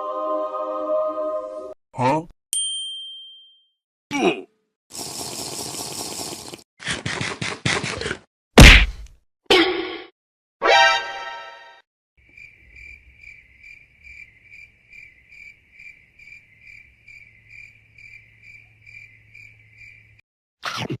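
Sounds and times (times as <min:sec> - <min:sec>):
cricket chirping: 0:12.2 - 0:20.2.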